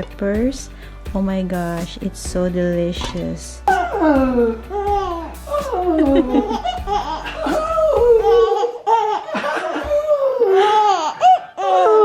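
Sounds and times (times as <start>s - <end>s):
baby laughing and cooing: 3.7s - 12.0s.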